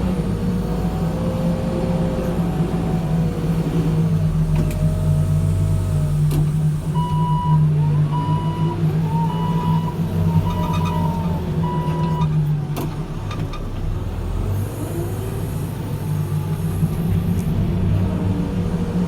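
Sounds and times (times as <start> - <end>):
diesel engine running: 0.0 - 19.0
reversing alarm beeping: 7.0 - 12.3.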